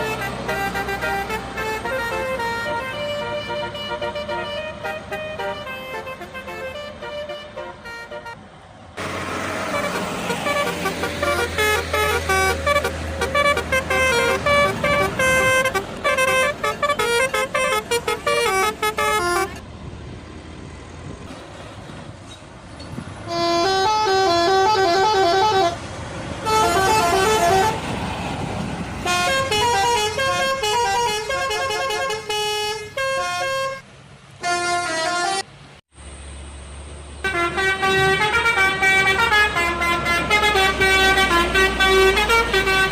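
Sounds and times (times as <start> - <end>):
air horns playing quick tunes: 0.0 - 8.4, 9.7 - 19.6, 23.3 - 25.8, 26.4 - 28.0, 29.0 - 33.8, 34.4 - 35.5, 37.2 - 42.9
rumbling bus engine: 0.0 - 42.9.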